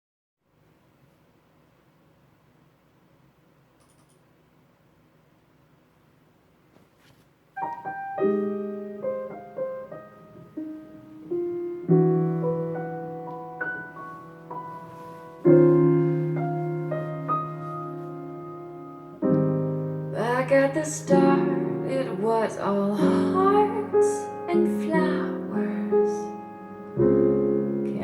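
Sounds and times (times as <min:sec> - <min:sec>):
solo jazz piano over loudspeakers: 0:07.6 - 0:28.0.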